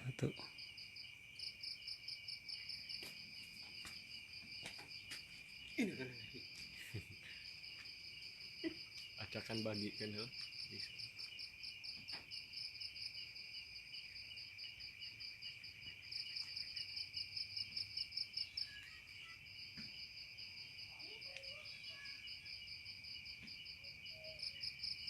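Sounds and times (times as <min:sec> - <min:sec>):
crickets trilling: 0:00.0 - 0:25.0
rapidly pulsing insect chirp: 0:00.0 - 0:25.0.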